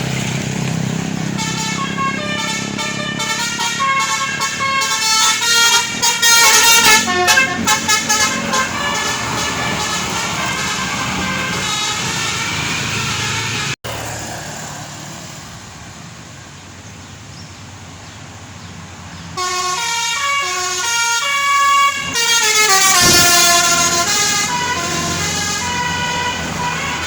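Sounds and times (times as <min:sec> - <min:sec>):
engines and traffic rumble: 0:00.0 - 0:27.0
musical bus air horns: 0:01.3 - 0:13.8, 0:19.4 - 0:27.0.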